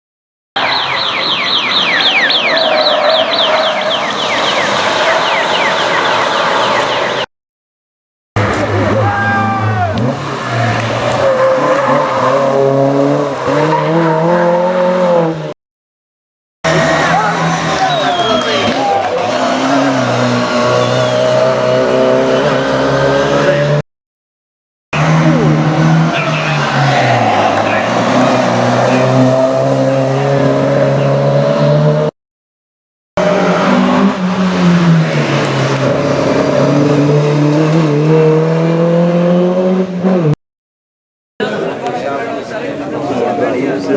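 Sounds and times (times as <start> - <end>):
rally car engine revving high: 8.4 - 15.6, 16.6 - 23.8, 25.0 - 32.1, 33.2 - 40.4.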